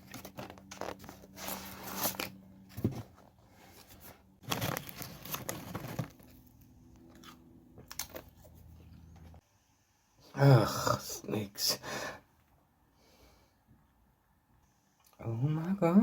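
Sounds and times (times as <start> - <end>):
book pages rustling: 0.0 - 6.7.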